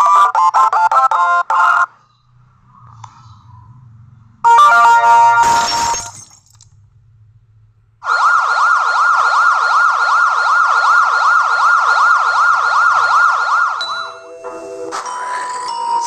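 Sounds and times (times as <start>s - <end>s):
siren yelping: 8.0s - 14.4s.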